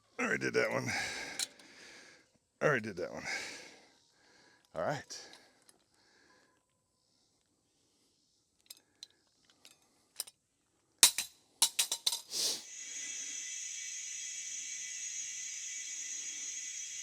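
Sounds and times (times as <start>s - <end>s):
tool clicks and clinks: 11.0s - 12.3s
air pump hissing whir: 12.4s - 17.0s.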